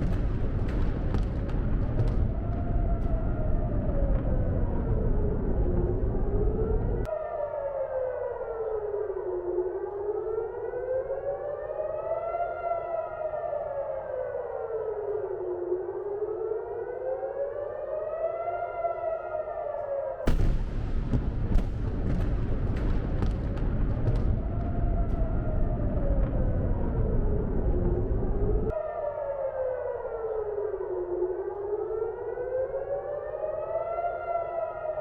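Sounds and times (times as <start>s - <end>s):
air raid siren wailing: 0.0s - 35.0s
sharp cracks: 20.3s - 25.6s.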